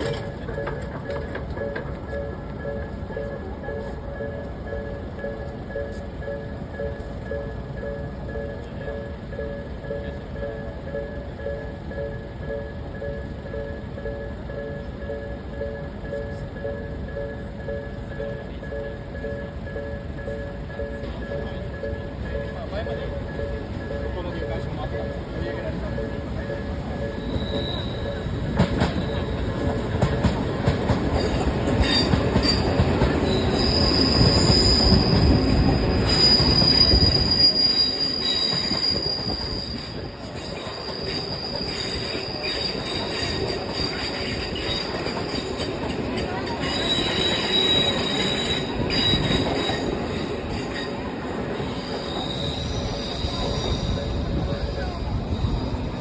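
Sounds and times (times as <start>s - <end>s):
wheels clicking over rail joints: 0.0s - 11.2s, 14.5s - 51.3s
train rumbling past: 0.0s - 56.0s
high wheel squeal: 26.5s - 29.8s, 31.1s - 56.0s.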